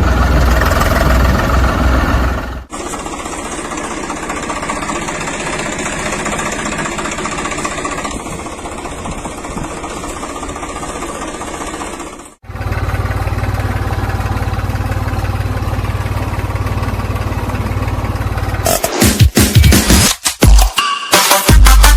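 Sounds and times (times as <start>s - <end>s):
lighter steady engine sound: 0.0s - 18.7s
engine running with low rumble: 0.0s - 19.0s.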